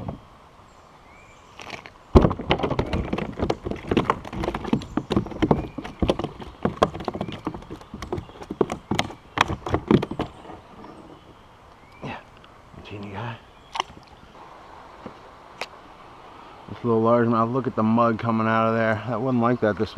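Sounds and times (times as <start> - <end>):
knocks and taps on plastic kayak: 2.2 - 10.6.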